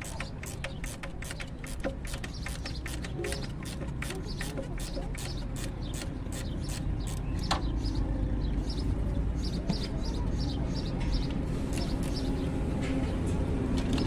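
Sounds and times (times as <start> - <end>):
wrench ratcheting clicks: 0.0 - 7.2.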